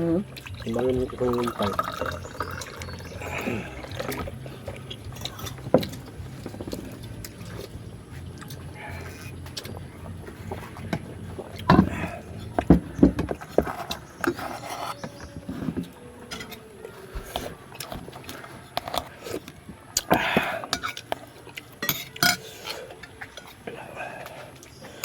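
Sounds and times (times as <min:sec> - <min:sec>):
clicks and knocks of eating: 0:00.2 - 0:25.0.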